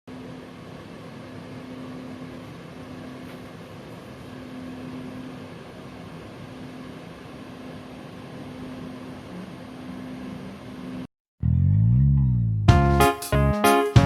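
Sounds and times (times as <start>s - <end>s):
machine hum and hiss: 0.1s - 11.1s
low droning tone: 11.4s - 12.7s.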